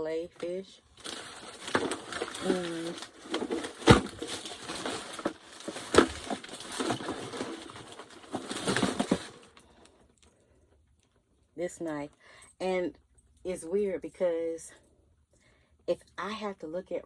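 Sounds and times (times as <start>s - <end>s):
gear handling rustling: 0.4s - 9.7s.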